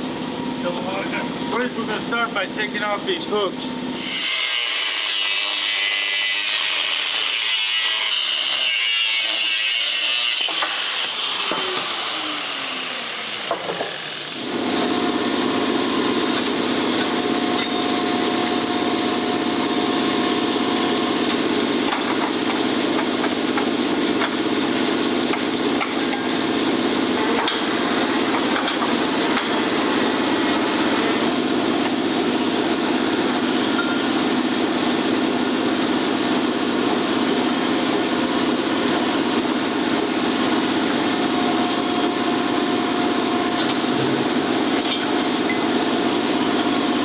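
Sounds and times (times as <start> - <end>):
power tool cutting metal: 3.9 - 32.1.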